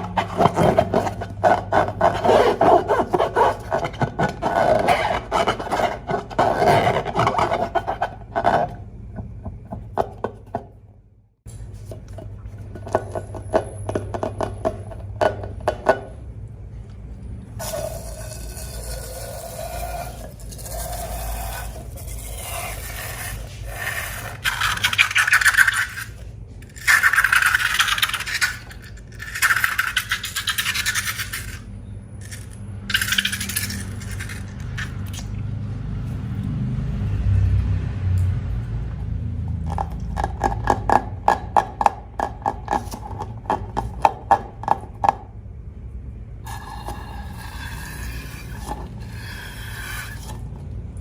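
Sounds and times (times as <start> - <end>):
slime scraping in container: 0.0 - 9.0, 17.6 - 35.4, 46.5 - 50.6.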